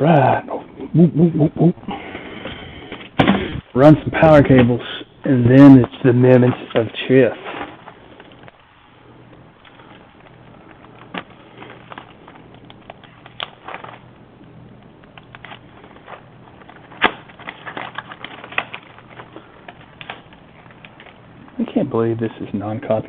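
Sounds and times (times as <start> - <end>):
faint steady hum: 0.0 - 23.0
cables and connectors clicking: 7.8 - 21.6.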